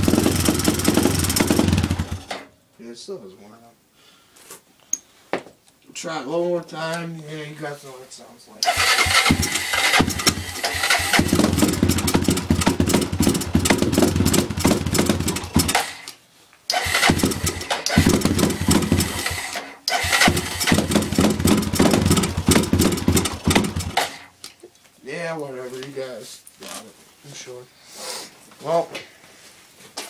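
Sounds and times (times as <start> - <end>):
atv engine running unevenly: 0.0 - 2.3, 8.7 - 16.0, 16.7 - 24.3.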